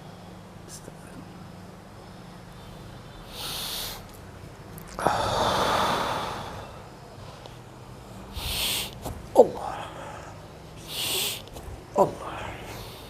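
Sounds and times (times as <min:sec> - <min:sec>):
person breathing deeply: 0:02.0 - 0:04.1, 0:04.9 - 0:07.4, 0:08.1 - 0:13.0.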